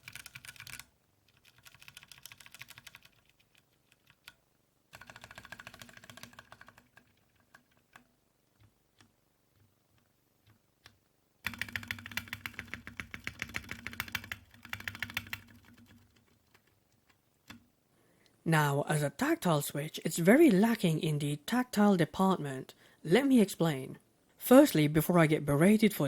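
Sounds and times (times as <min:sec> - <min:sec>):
mechanical keyboard typing: 0:00.0 - 0:17.6.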